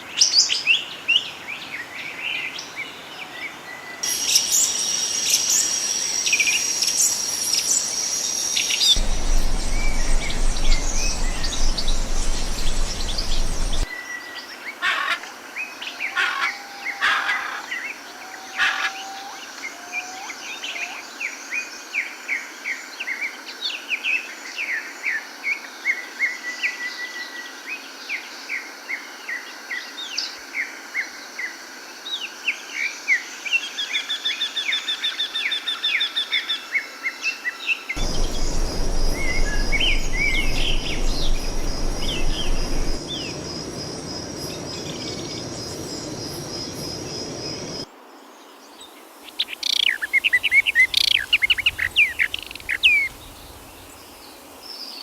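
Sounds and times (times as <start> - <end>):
songbirds singing and chirping: 2.6 - 14.0, 38.0 - 55.0
low rumble: 9.0 - 13.9, 38.0 - 47.9.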